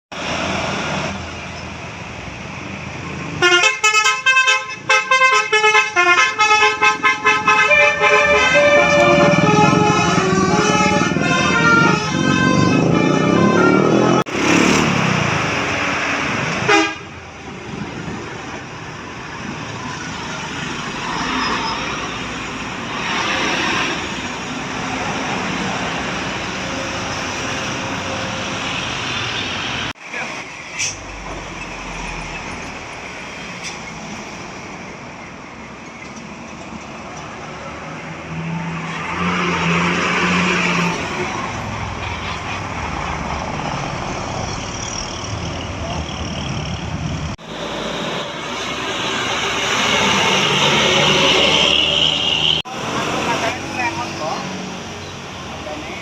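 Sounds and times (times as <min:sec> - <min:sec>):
traffic passing on a road: 0:00.1 - 0:56.0
bus musical air horn: 0:03.4 - 0:14.2, 0:16.6 - 0:17.2.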